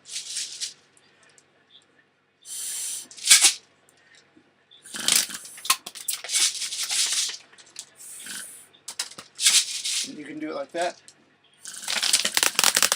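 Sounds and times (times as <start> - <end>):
air rush hiss: 2.5 - 3.4.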